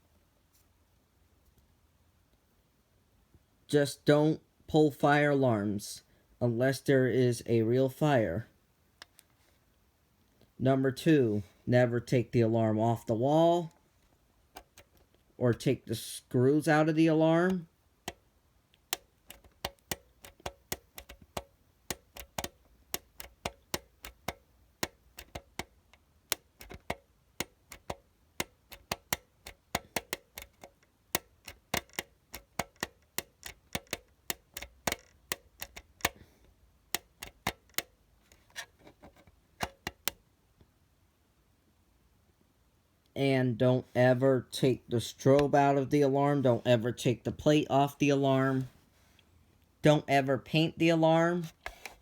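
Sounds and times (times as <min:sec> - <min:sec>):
screwdriver clicking: 0:14.6 - 0:15.0, 0:17.5 - 0:18.2, 0:18.8 - 0:36.2, 0:36.9 - 0:40.2.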